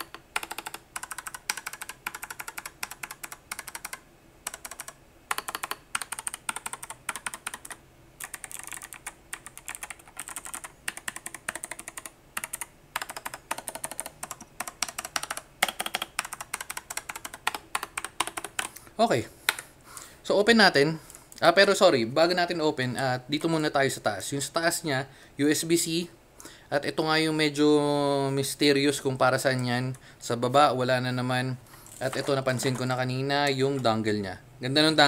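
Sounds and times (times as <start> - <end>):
keyboard typing clicks: 0.0 - 18.8.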